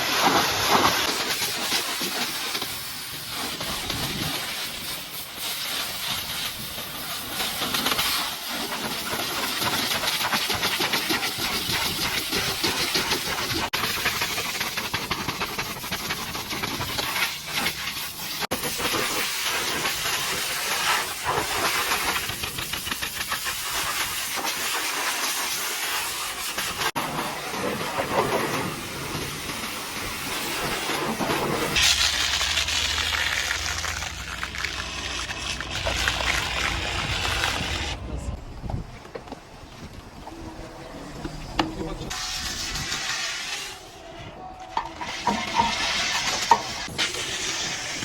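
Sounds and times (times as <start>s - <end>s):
pressure washer spraying water: 0.0s - 38.0s, 42.0s - 44.0s, 44.8s - 48.0s.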